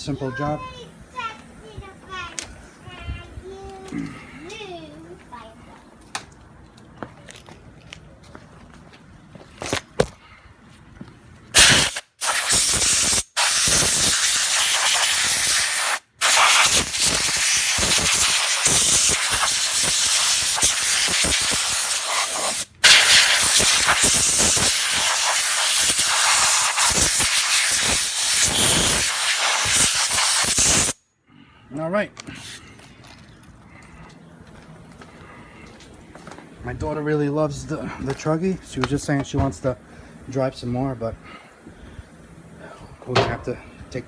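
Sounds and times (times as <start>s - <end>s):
compressed air hissing: 11.6s - 31.0s, 32.3s - 32.7s.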